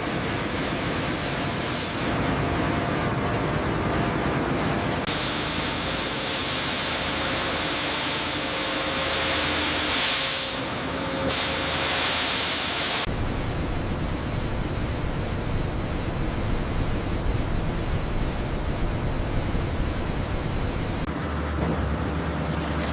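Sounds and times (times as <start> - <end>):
loud steady machine hiss: 0.0 - 2.2, 5.0 - 21.1
low machine rumble: 13.1 - 22.9.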